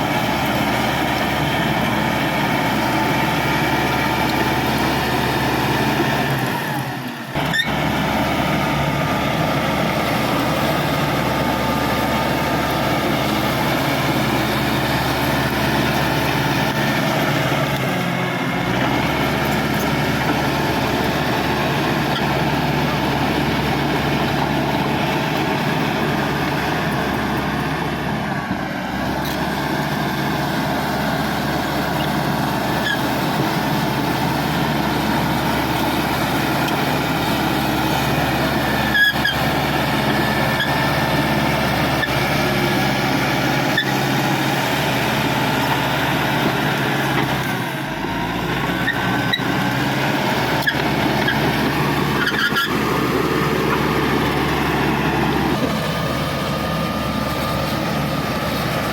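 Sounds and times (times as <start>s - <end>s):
bulldozer diesel engine running: 0.0s - 58.9s.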